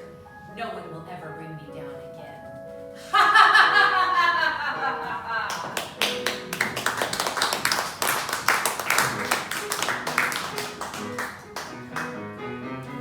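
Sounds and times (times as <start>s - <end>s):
audience clapping: 5.5s - 12.2s.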